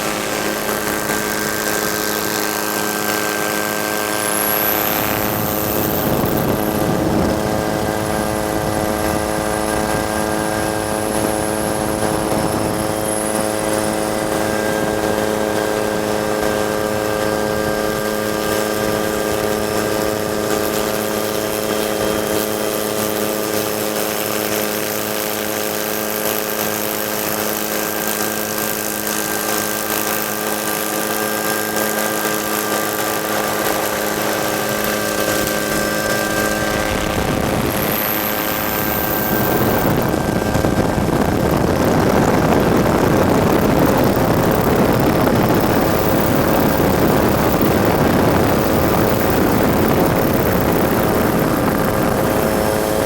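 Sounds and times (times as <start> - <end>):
helicopter running: 0.0 - 53.0
rushing noise surge: 30.6 - 53.0.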